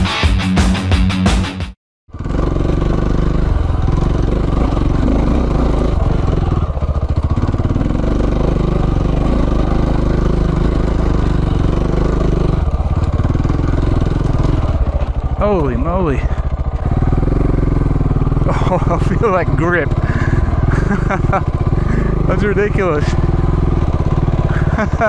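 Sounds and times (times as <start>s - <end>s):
rock music: 0.0s - 1.7s
motorcycle engine running: 2.1s - 25.0s.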